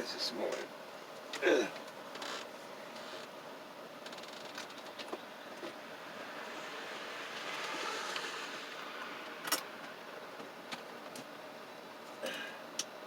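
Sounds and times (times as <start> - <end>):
air conditioner fan whoosh: 4.6 - 13.0.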